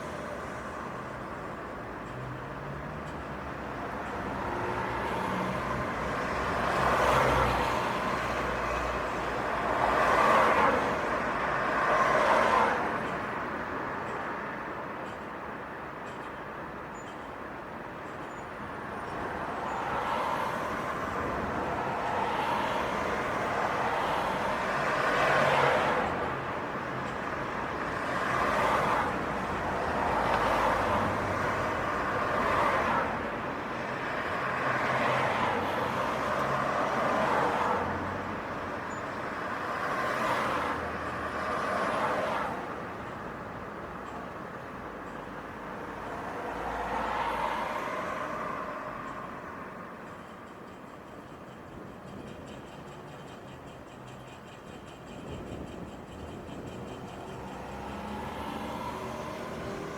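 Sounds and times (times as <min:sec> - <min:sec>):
steady traffic hum: 0:00.0 - 0:59.9
cars passing: 0:02.6 - 0:13.8, 0:18.8 - 0:50.1, 0:55.2 - 0:59.9.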